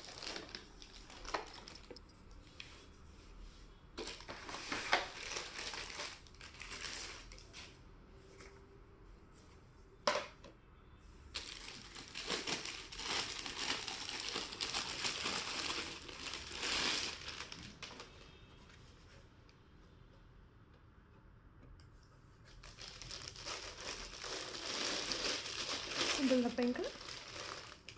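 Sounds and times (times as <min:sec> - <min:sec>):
plastic packaging crinkling: 0:00.0 - 0:02.4, 0:04.0 - 0:07.7, 0:11.3 - 0:18.3, 0:22.5 - 0:27.9.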